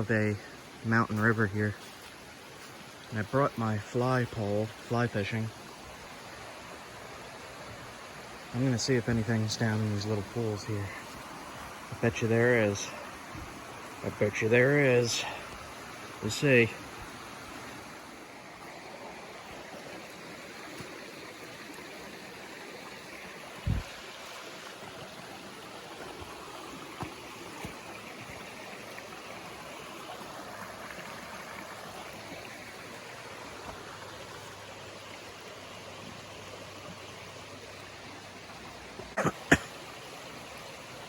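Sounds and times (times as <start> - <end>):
river rushing over rocks: 5.6 - 36.8.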